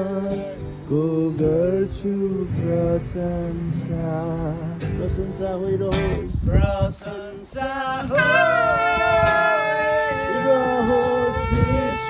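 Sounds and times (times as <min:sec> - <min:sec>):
person singing worship song: 0:06.5 - 0:12.0.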